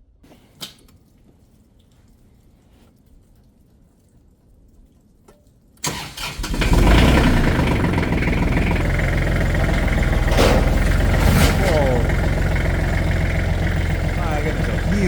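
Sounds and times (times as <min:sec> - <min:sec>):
tractor engine starting and running: 0:05.8 - 0:15.0.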